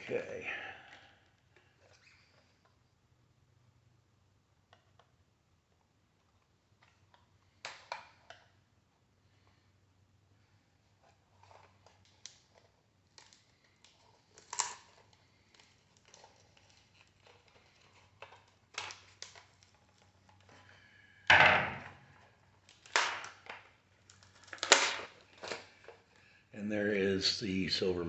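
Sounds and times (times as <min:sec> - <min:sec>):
loud clatter of parts: 0:24.2 - 0:25.8.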